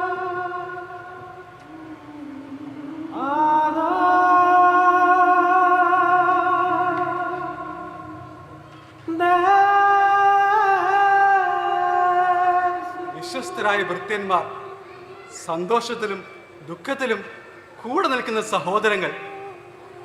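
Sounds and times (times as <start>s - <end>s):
wordless vocal music: 0.0s - 14.8s.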